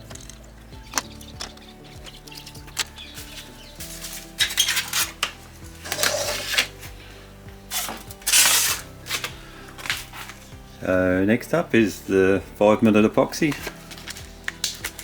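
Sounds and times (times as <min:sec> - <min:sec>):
small hard objects clattering: 0:00.0 - 0:07.0, 0:07.7 - 0:10.6, 0:13.4 - 0:15.0
background music: 0:00.0 - 0:15.0.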